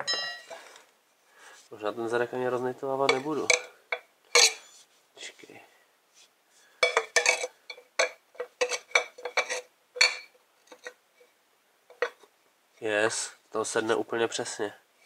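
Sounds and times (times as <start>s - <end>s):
metal clinking and knocking: 0.0s - 0.7s, 3.1s - 4.6s, 6.8s - 11.0s.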